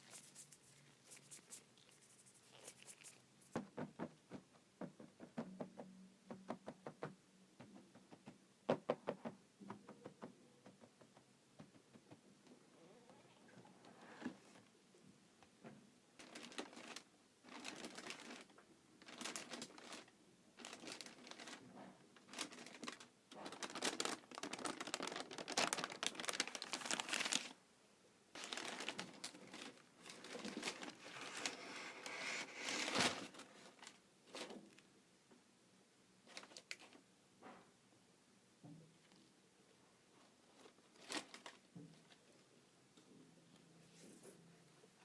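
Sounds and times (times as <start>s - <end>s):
packing paper crinkling: 0.0s - 3.6s, 16.2s - 21.6s, 22.2s - 27.6s, 28.4s - 33.9s.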